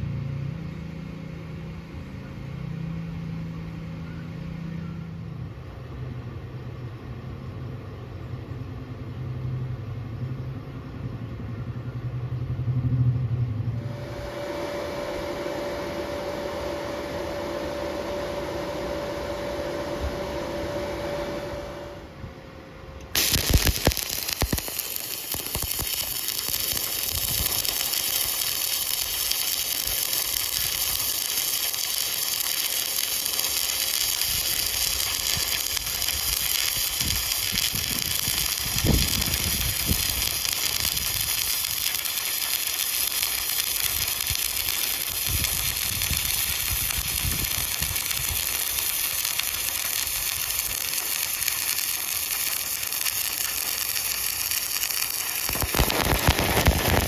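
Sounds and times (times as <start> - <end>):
welding arc sizzling crackle: 23.0 - 57.0.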